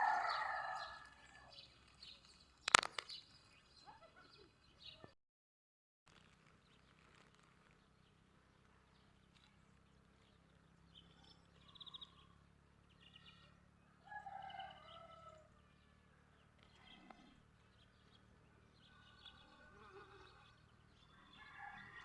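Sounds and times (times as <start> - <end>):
faint bird calls and chirps: 6.2 - 22.0.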